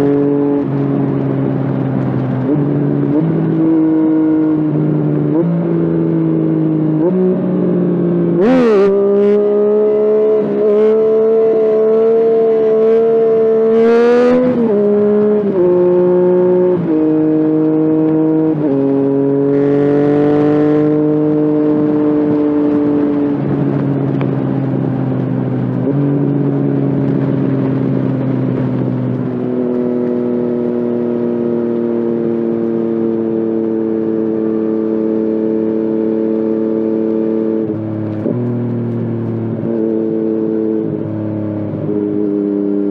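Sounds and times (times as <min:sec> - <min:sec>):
motorcycle engine: 0:00.0 - 0:42.9.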